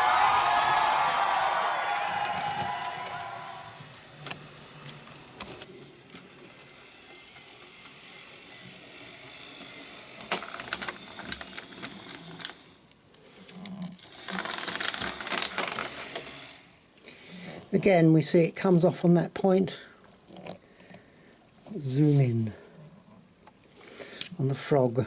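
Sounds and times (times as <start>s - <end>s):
model train motor whirring: 0.0s - 16.8s.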